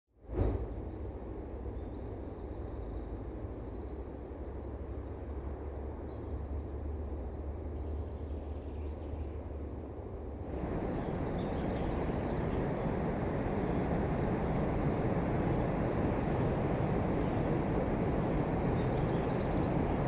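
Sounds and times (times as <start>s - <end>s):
steady high buzz: 10.4s - 20.0s
small birds chirping: 10.5s - 20.0s
wind rushing: 10.5s - 20.0s.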